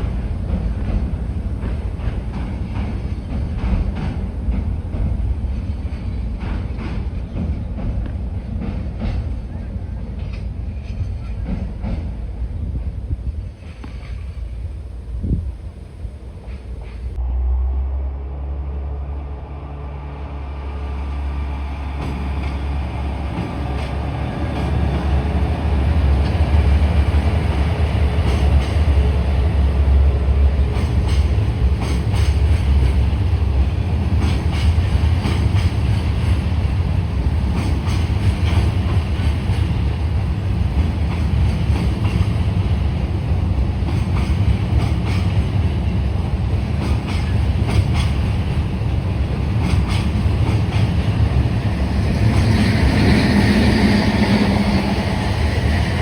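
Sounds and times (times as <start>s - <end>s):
freight train rumbling: 0.0s - 56.0s
wheels clicking over rail joints: 43.8s - 51.5s.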